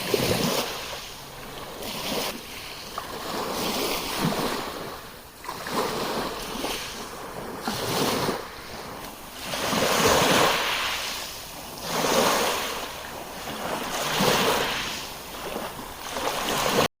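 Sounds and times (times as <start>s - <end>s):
sea waves breaking on shore: 0.0s - 16.9s
wind on microphone: 0.0s - 16.9s.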